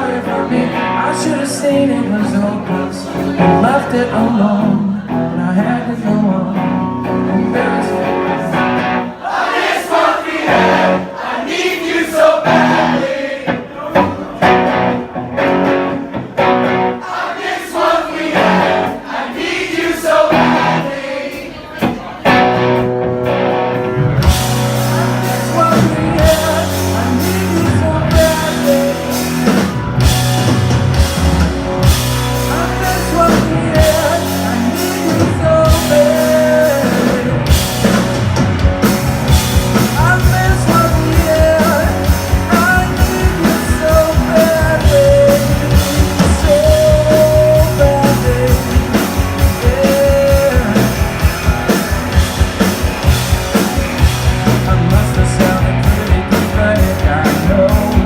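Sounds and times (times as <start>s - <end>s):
live rock band playing: 0.0s - 11.2s, 12.2s - 58.0s
person singing: 24.6s - 29.6s, 32.4s - 37.6s, 39.7s - 51.3s, 54.3s - 58.0s.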